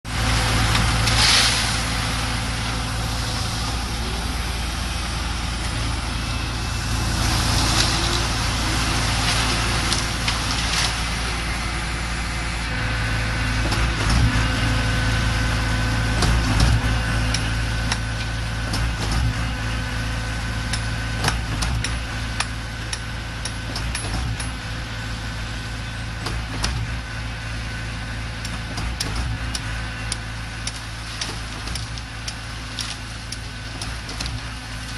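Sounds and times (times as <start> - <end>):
diesel engine running: 0.0 - 34.9
high machine whine: 0.2 - 18.6.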